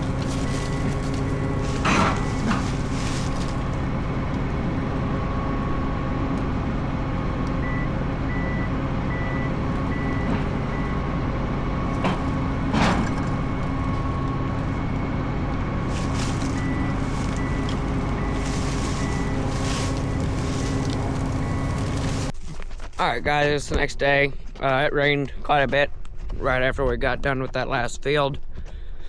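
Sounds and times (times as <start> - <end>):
machine engine running: 0.0 - 22.3
constant hum: 0.0 - 29.0.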